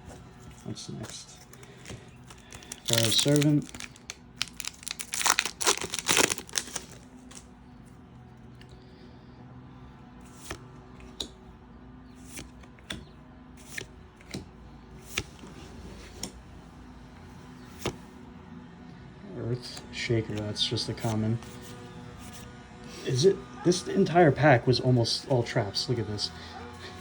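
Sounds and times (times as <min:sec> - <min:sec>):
foil pack torn with crinkle: 0:01.5 - 0:07.4
cards flipped with clicks: 0:10.3 - 0:11.4, 0:12.2 - 0:14.5.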